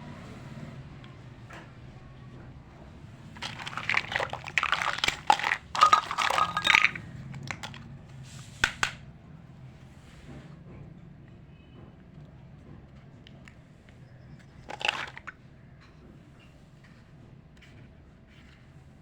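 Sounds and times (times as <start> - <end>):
plastic packaging crinkling: 3.4 - 7.8, 14.7 - 15.3.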